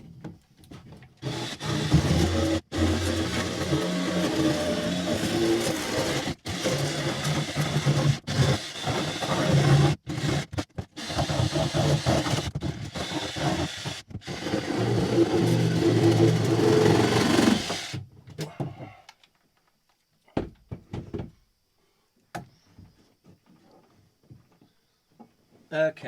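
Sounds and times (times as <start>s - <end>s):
power saw cutting fibreglass: 1.2s - 18.0s.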